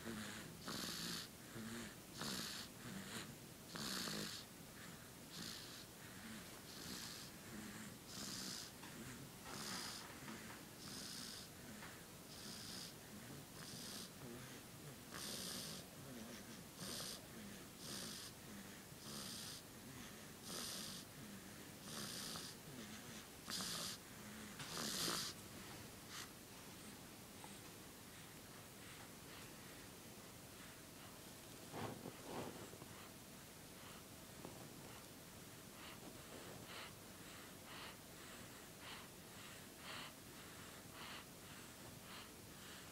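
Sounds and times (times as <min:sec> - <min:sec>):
baby snoring: 0:00.0 - 0:04.5, 0:05.3 - 0:11.5, 0:12.3 - 0:13.0, 0:13.6 - 0:25.4.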